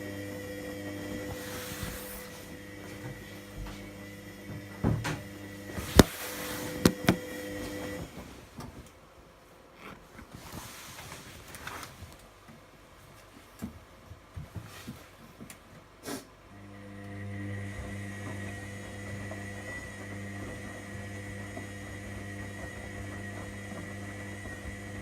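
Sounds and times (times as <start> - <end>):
laundry machine hum: 0.0 - 9.3, 16.5 - 25.0.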